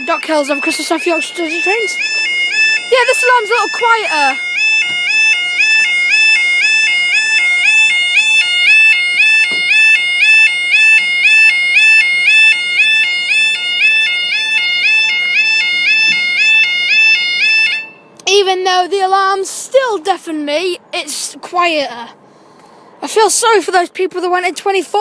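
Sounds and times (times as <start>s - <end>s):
level crossing alarm warble: 0.0s - 18.2s.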